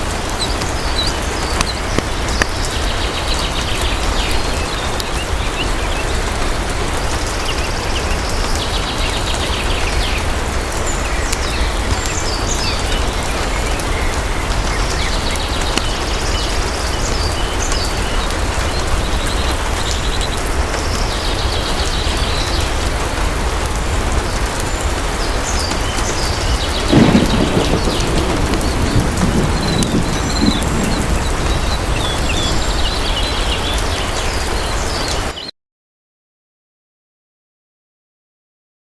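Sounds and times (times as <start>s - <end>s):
heavy rain falling: 0.0s - 35.3s
thunder rumble: 26.4s - 34.4s.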